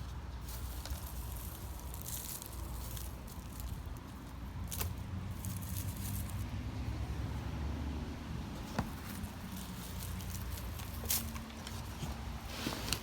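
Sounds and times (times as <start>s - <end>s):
hands digging in soil: 0.0s - 6.5s.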